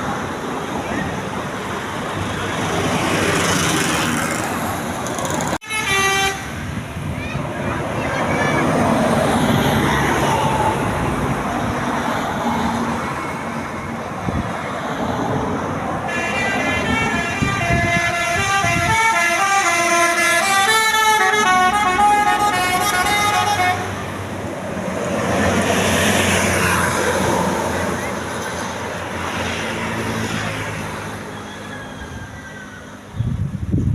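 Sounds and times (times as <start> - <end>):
traffic noise: 0.0 - 33.9
musical bus horn tune: 5.6 - 6.8, 16.1 - 24.1
voices: 6.6 - 12.0.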